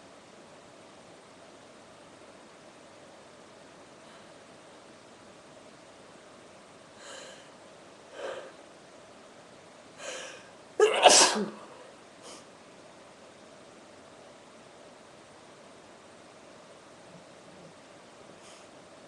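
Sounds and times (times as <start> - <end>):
woman sneezing: 10.8 - 11.6.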